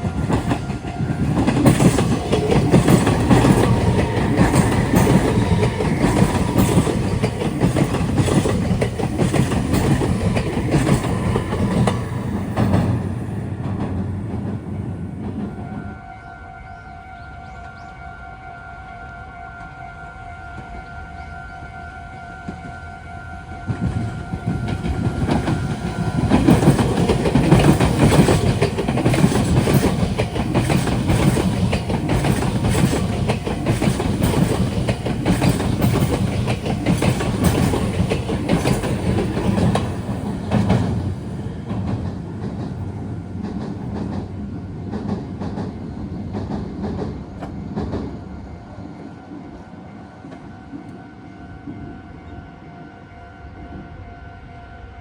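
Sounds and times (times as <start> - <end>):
train wheels clacking over rail joints: 0.0 - 15.6, 23.7 - 48.2
level-crossing warning alarm: 0.0 - 44.2.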